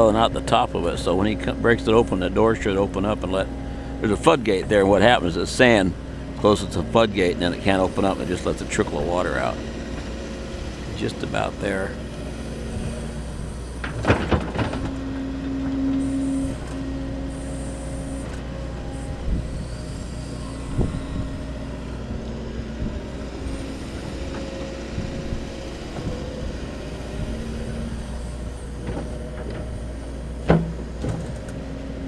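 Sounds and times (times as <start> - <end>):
excavator engine drone: 0.0 - 32.0
hydraulic whine: 0.0 - 32.0.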